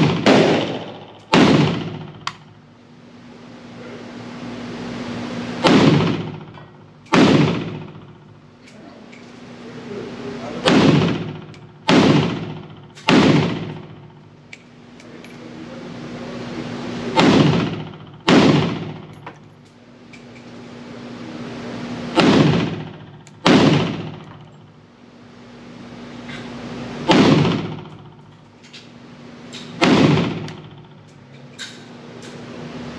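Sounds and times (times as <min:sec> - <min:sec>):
pistol gunshots with echo: 0:00.0 - 0:02.5, 0:05.6 - 0:08.2, 0:10.6 - 0:14.2, 0:17.1 - 0:19.2, 0:22.1 - 0:24.5, 0:27.0 - 0:28.2, 0:29.7 - 0:31.0.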